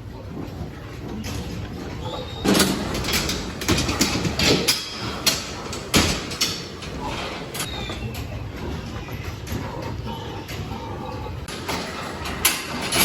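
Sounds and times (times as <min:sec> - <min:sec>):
sharp knocks and clatters: 0:02.4 - 0:07.7.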